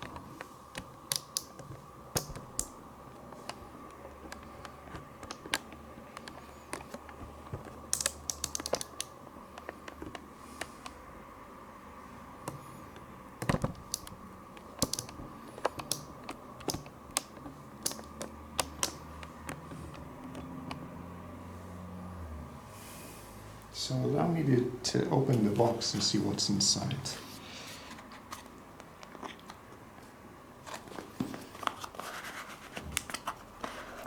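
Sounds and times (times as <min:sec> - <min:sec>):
hands handling packaging: 0:30.6 - 0:34.0.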